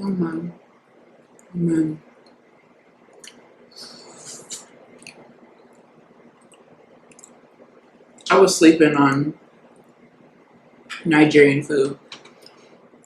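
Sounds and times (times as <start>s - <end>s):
wet chewing and lip smacks: 5.0s - 7.5s.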